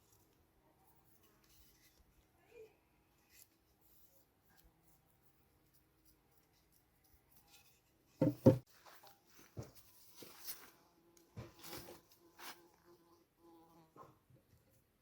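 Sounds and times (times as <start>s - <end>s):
clicks and scrapes of objects handled: 0.0s - 2.4s, 3.1s - 8.2s.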